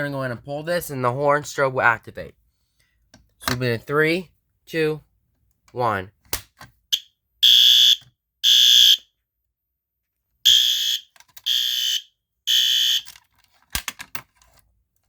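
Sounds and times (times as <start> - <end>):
alarm horn blasts: 10.5 - 13.0.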